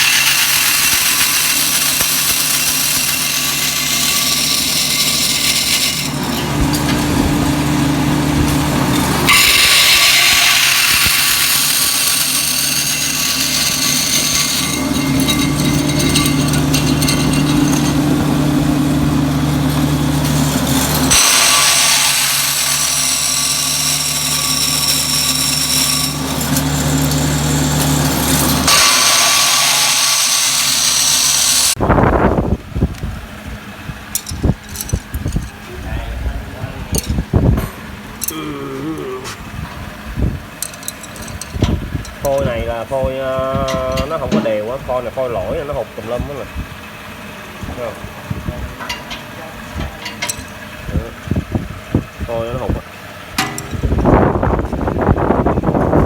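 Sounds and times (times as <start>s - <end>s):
sanding belt grinding wood: 0.0s - 31.8s.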